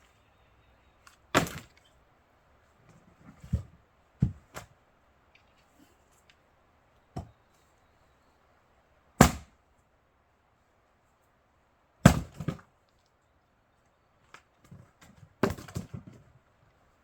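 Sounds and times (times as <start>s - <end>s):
axe striking wood: 1.3s - 1.8s, 9.2s - 9.5s, 12.0s - 12.6s.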